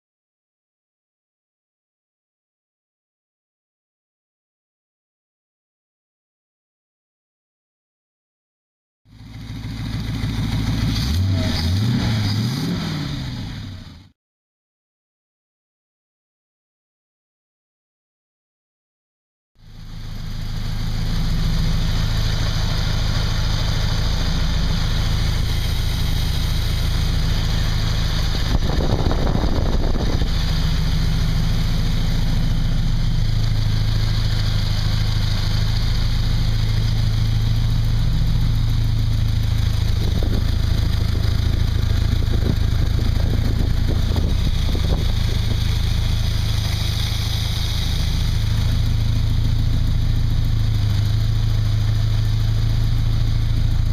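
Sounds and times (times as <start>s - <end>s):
car engine idling: 9.1s - 14.1s, 19.6s - 53.9s.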